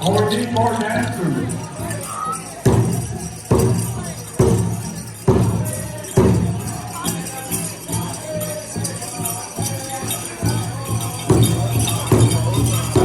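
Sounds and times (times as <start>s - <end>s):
jingling metal: 0.0s - 13.0s
heavy drum beats: 1.1s - 13.0s.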